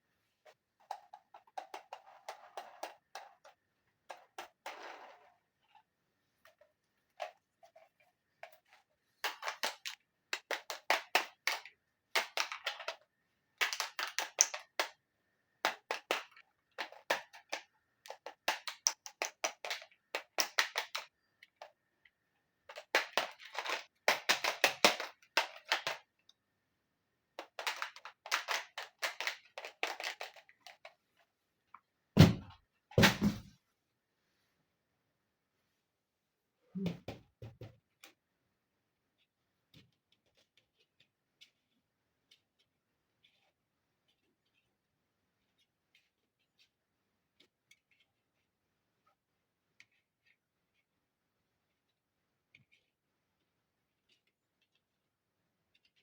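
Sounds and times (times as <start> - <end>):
plastic toy pieces clicking: 9.2 - 13.0, 13.6 - 15.0, 15.6 - 21.8, 22.7 - 26.1, 27.4 - 30.9.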